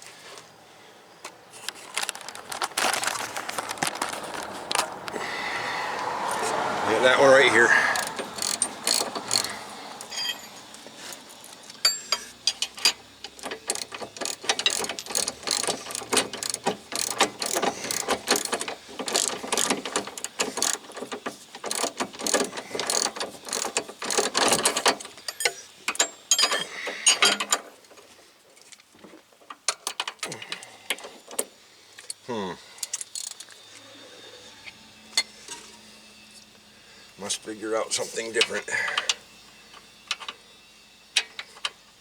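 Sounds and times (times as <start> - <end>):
ratchet wrench clicking: 7.0 - 10.4, 11.8 - 26.4, 32.8 - 33.5.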